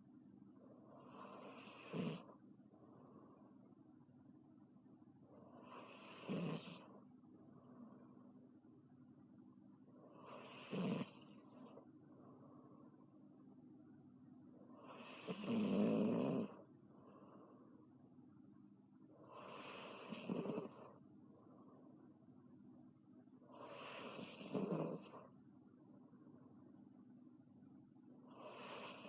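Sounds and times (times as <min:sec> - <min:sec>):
girl snoring loudly: 0:05.7 - 0:06.8, 0:10.3 - 0:11.4, 0:14.9 - 0:16.6, 0:19.3 - 0:20.8, 0:23.6 - 0:25.1, 0:28.4 - 0:29.0.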